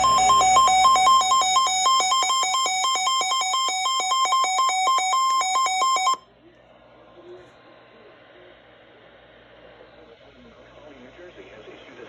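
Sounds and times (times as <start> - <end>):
two-pitch electronic alarm tone: 0.0 - 6.2.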